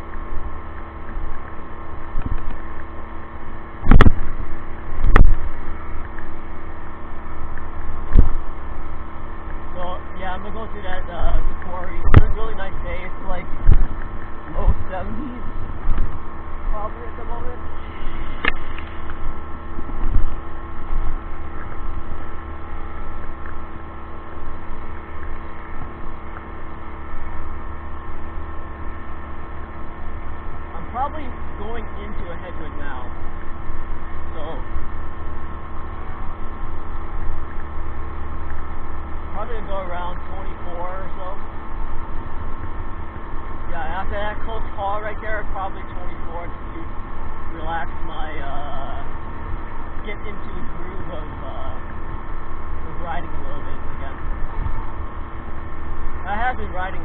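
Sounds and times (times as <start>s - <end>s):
electric bike drive hum: 0.0s - 57.0s
wind rumbling on microphone: 0.0s - 57.0s
loud thumps: 3.8s - 4.4s
sharp click: 18.4s - 19.2s.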